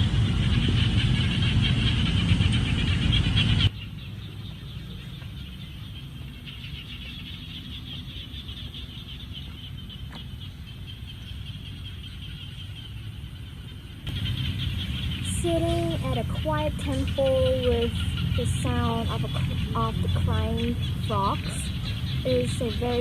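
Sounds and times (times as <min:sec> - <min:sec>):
rush of noise: 0:00.0 - 0:03.7
frogs calling: 0:00.0 - 0:23.0
low steady rumble: 0:00.0 - 0:23.0.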